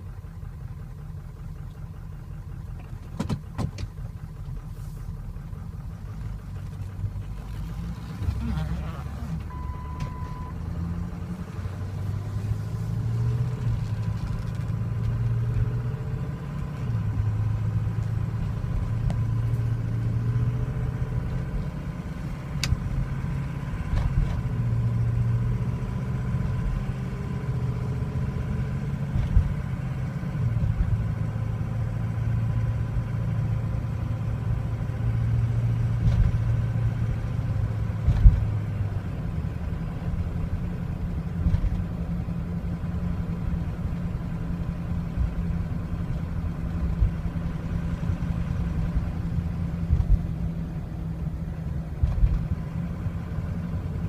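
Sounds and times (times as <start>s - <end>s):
diesel engine idling roughly: 0.0s - 10.0s.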